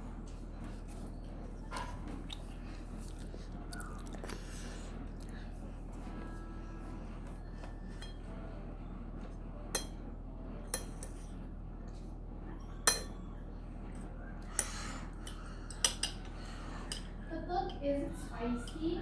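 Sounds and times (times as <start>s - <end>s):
low steady hum: 0.0s - 19.0s
utensils clinking against dish: 7.8s - 8.4s, 9.7s - 10.0s, 10.6s - 11.4s, 12.6s - 19.0s.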